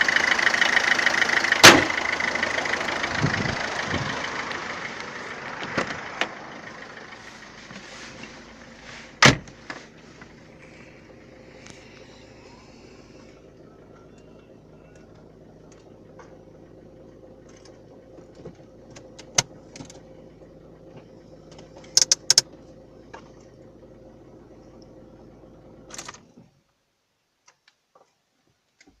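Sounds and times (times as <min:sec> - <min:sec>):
diesel engine idling: 0:00.0 - 0:26.6
sharp clicks: 0:21.8 - 0:22.5.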